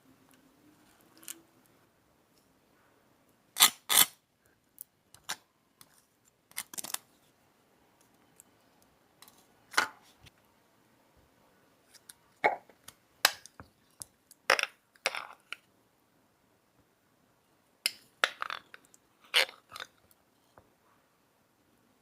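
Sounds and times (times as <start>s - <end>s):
small objects clicking and knocking: 12.8s - 15.7s, 17.9s - 20.2s.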